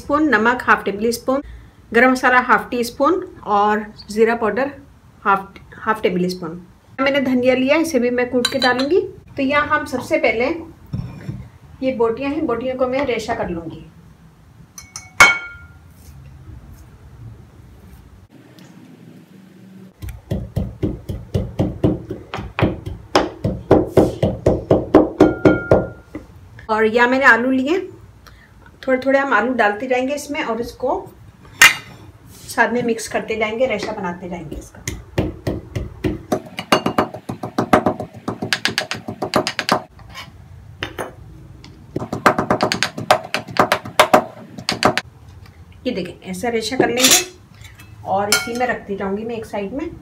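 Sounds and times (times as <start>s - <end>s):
pestle pounding: 20.0s - 26.0s, 34.8s - 39.9s, 41.9s - 45.0s
food pounding strokes: 42.0s - 45.0s.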